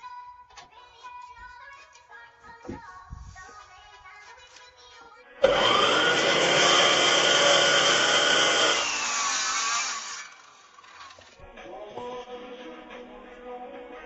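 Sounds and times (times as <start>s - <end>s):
power tool cutting wood: 5.4s - 11.4s.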